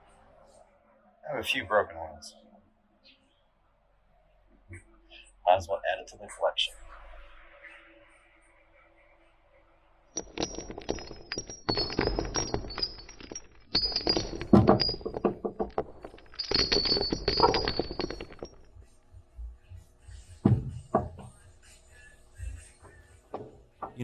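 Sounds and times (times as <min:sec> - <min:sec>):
metal hardware rattling in container: 0:10.2 - 0:18.7
knocks: 0:20.4 - 0:21.4.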